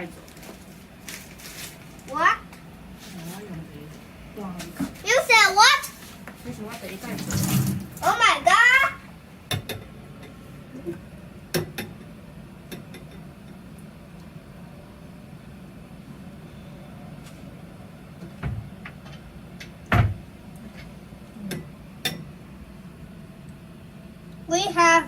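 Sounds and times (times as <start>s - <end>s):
steady low hum: 0.0s - 25.0s
kitchen knocks and clunks: 19.9s - 20.2s.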